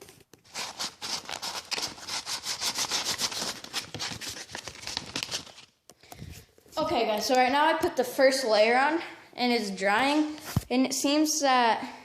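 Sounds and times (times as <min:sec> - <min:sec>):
sandpaper rubbing: 0:00.5 - 0:05.5.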